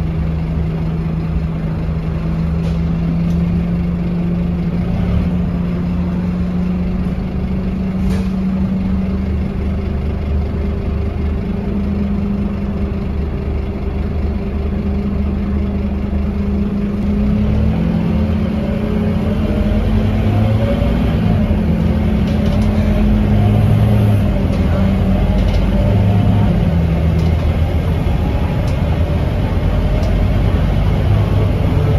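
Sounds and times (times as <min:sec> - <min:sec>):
bus diesel engine revving: 0:00.0 - 0:31.9.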